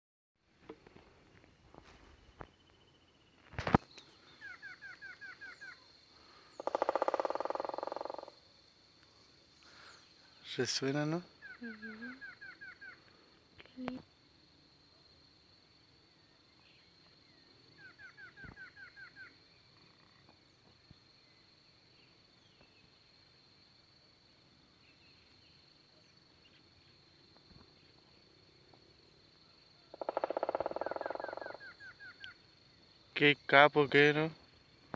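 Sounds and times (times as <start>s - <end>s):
bird chirps: 2.3s - 5.9s
woodpecker drumming: 4.1s - 8.4s, 29.9s - 32.3s.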